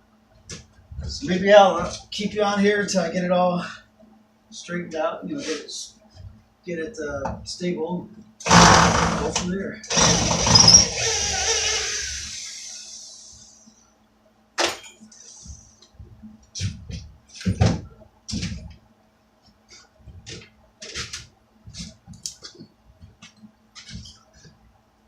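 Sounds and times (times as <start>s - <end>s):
power tool winding down: 8.5s - 13.0s.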